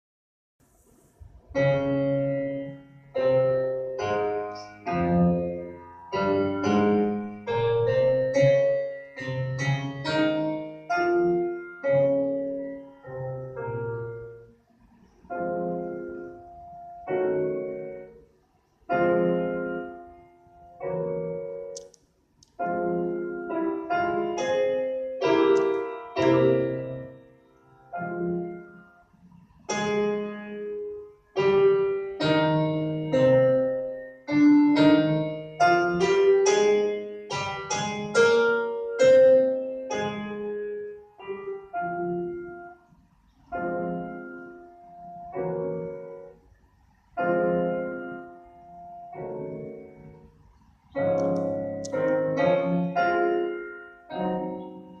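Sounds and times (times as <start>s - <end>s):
slow piano music: 0.6s - 55.0s.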